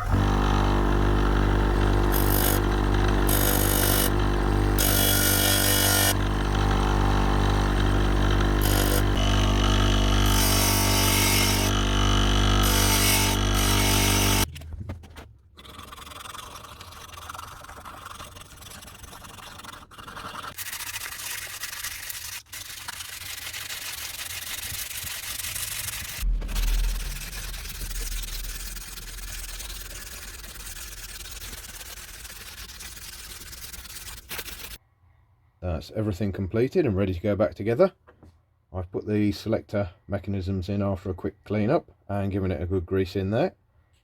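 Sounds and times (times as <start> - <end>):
power tool motor running: 0.0 - 14.5
scratchy sanding rasp: 1.8 - 6.2, 7.6 - 14.5, 15.8 - 34.8.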